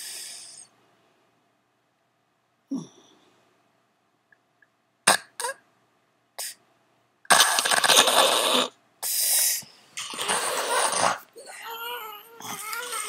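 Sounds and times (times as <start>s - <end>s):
baby snorting and coughing: 5.1s - 5.6s, 7.3s - 8.8s, 10.0s - 11.3s.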